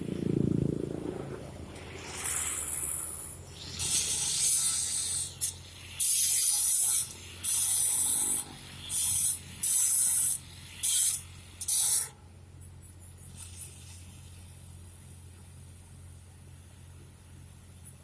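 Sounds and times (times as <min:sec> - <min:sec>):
steady low hum: 0:00.0 - 0:06.1
welding arc crackling: 0:01.7 - 0:12.1.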